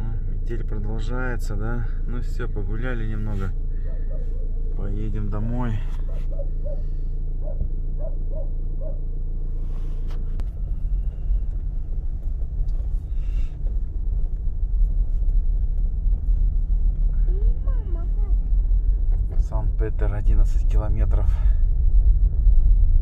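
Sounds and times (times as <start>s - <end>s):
car driving off rumble: 0.0s - 23.0s
car engine idling: 0.0s - 23.0s.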